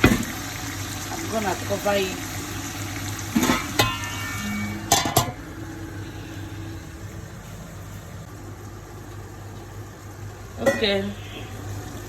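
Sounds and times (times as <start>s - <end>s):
steady low hum: 2.4s - 10.5s
metal pot lid clanking: 3.3s - 5.4s.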